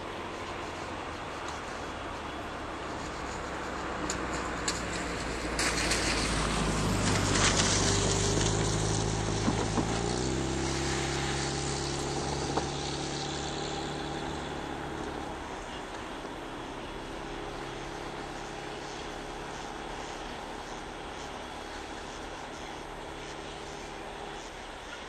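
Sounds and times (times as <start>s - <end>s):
diesel locomotive engine running: 0.0s - 25.0s.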